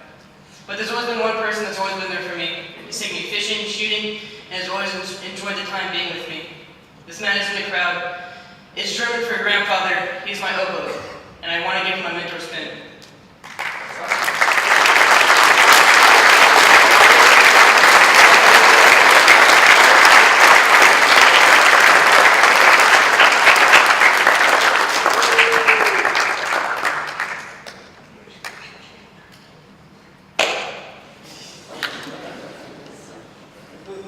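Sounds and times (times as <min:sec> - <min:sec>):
audience applauding: 0:13.4 - 0:28.6
sharp knock: 0:30.4 - 0:30.9.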